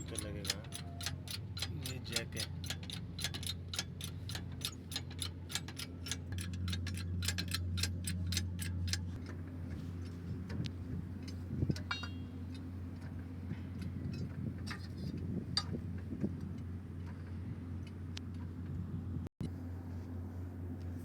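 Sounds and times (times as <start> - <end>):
jack clicking: 0.0 - 9.1
low engine hum: 0.0 - 21.0.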